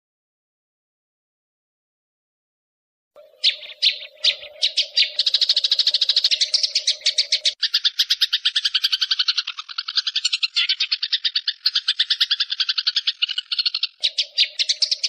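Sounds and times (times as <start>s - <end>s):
songbird chirping and trilling: 3.2s - 15.0s.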